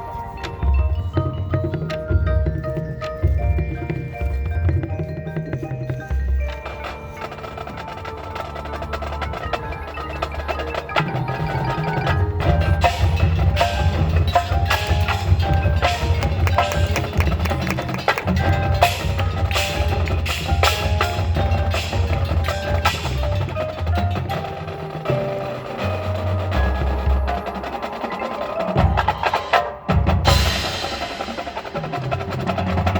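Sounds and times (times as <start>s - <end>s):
ringing mallet notes: 0.0s - 23.5s
marching band percussion: 0.0s - 32.9s.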